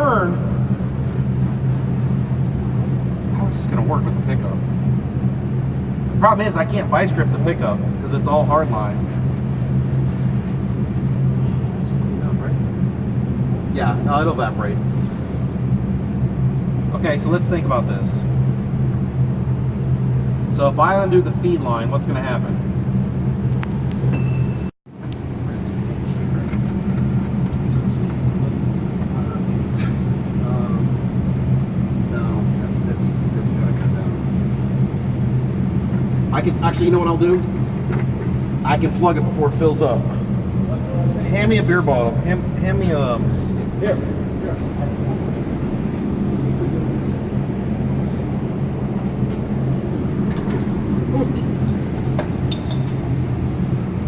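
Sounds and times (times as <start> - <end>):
low machine hum: 0.0 - 54.0
vehicle engine idling: 0.0 - 54.0
light metallic clinks: 51.1 - 53.1.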